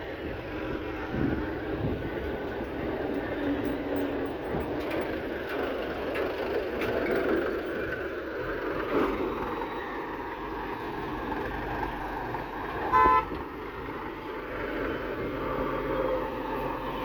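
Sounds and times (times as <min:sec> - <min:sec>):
heavy machinery engines running: 0:00.0 - 0:17.0
vehicle horn toot: 0:12.9 - 0:13.4.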